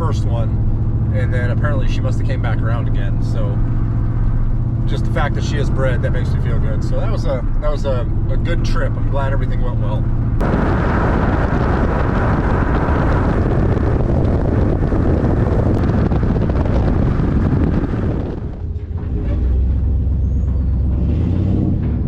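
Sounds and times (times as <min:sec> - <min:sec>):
vehicle running: 0:00.0 - 0:22.0
loud rushing wind noise: 0:06.8 - 0:20.2.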